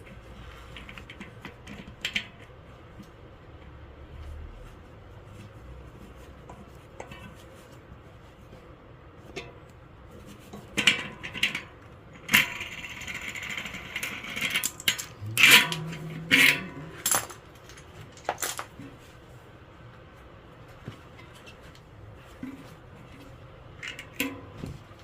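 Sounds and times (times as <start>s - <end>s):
metal parts and tools clinking: 14.3s - 18.8s.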